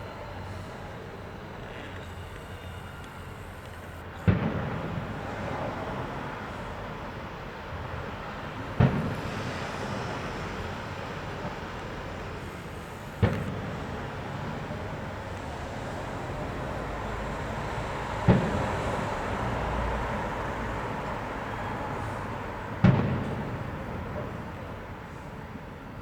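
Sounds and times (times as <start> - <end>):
steady background din: 0.0 - 19.5
firework shell bangs: 4.2 - 5.8, 8.7 - 13.9, 22.8 - 24.4.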